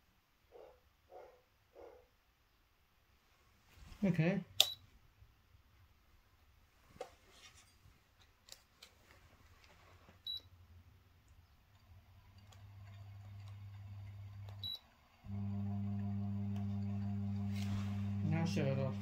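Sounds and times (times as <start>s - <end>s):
electrical mains hum: 9.0s - 19.0s.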